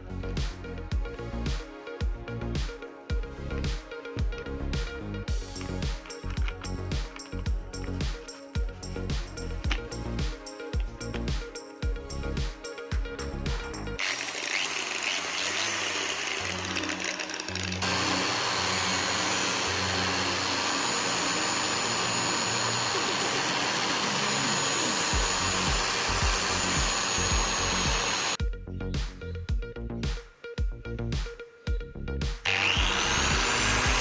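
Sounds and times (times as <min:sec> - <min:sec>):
angle grinder running: 0:13.6 - 0:28.4, 0:32.5 - 0:34.0.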